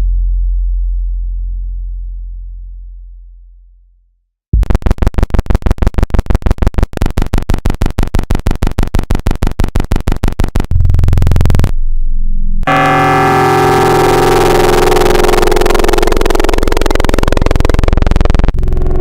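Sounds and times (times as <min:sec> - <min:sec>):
pulsing electronic buzzy tone: 0:04.6 - 0:19.0.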